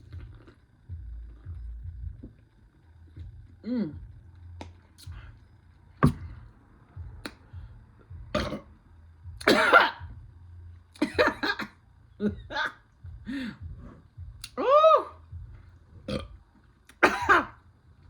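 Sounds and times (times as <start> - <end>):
mouth smacking clicks: 14.4 - 14.6.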